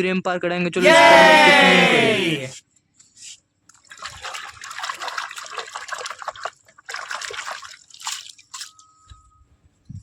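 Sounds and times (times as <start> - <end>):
water trickling and splashing: 3.7 - 8.9.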